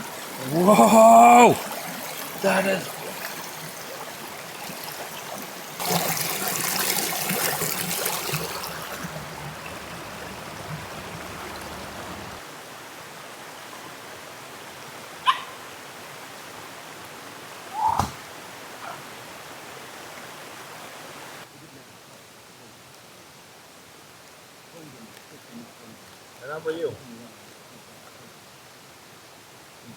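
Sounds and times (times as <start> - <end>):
rush of water noise: 0.0 - 26.4
river running: 0.0 - 29.8
small dog yipping: 15.2 - 15.6, 17.8 - 18.2.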